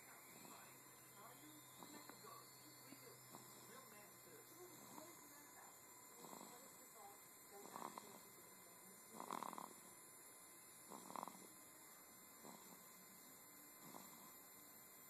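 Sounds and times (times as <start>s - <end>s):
faint rattling snores: 6.1s - 6.8s, 7.6s - 8.3s, 9.0s - 9.8s, 10.8s - 11.7s, 12.3s - 13.0s, 13.8s - 14.5s.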